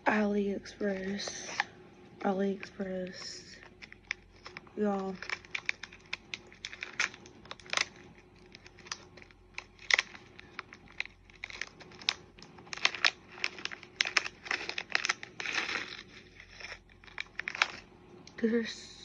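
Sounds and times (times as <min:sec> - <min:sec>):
plastic packaging crinkling: 0:00.8 - 0:17.9.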